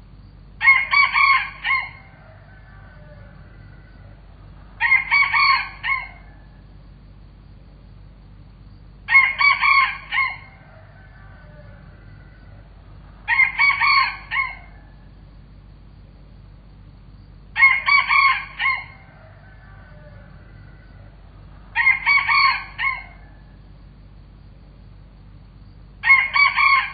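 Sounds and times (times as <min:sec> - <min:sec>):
rooster crowing: 0:00.6 - 0:06.8, 0:09.1 - 0:15.2, 0:17.6 - 0:23.8, 0:26.0 - 0:26.9.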